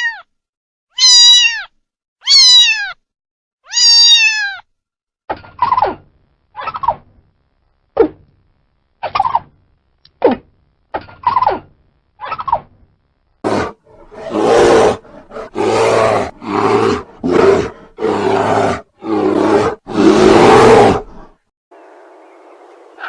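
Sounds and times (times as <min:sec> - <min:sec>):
large animal loud rough calls: 0:13.5 - 0:21.4.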